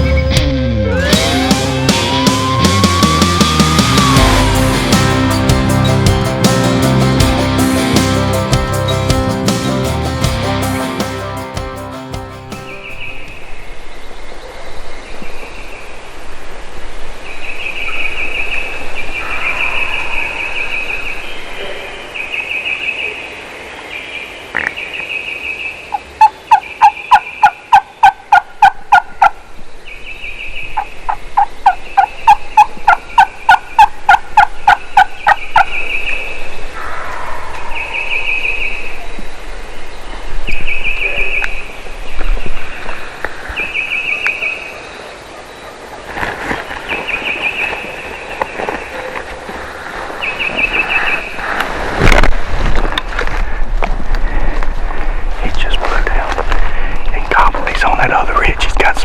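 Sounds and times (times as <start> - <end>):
turkey yelping: 1.0 - 4.2, 25.9 - 29.4, 31.6 - 35.7.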